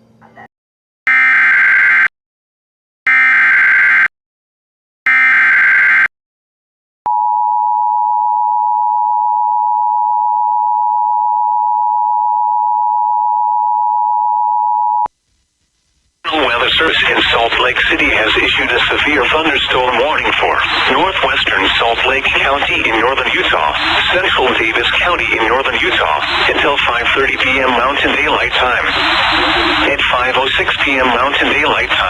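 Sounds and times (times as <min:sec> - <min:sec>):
digital data tone bursts: 0:17.3 - 0:32.0.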